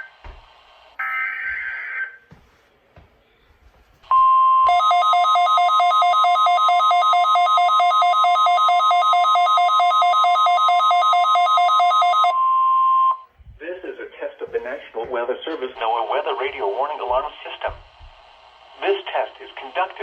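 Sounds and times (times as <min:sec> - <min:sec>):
warning alarm tone: 0:01.0 - 0:02.2, 0:04.1 - 0:13.3.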